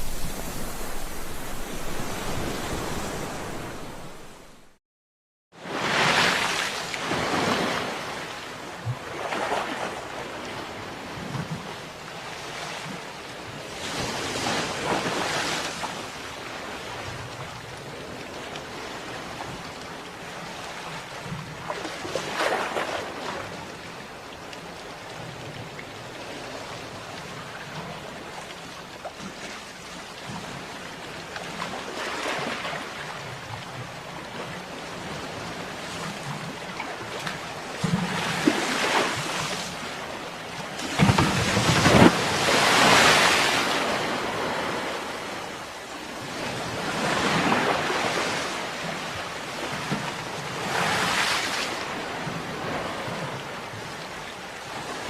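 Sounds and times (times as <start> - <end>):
waves breaking on shore: 0.0 - 4.8, 5.6 - 55.0.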